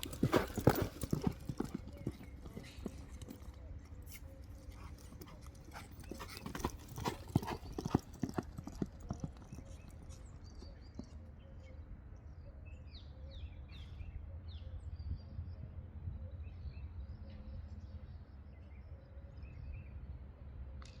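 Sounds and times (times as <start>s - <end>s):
horse hooves clip-clopping: 0.0s - 11.2s.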